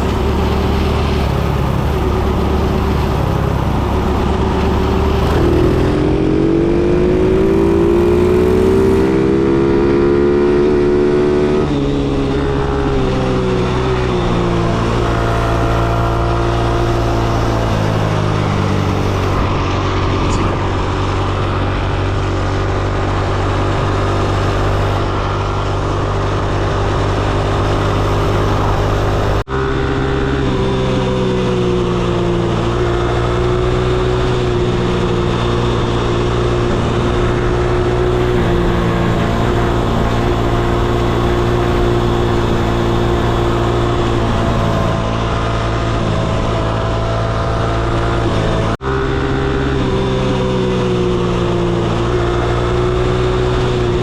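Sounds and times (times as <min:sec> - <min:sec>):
minibike engine running: 0:00.0 - 0:11.1, 0:12.4 - 0:30.5.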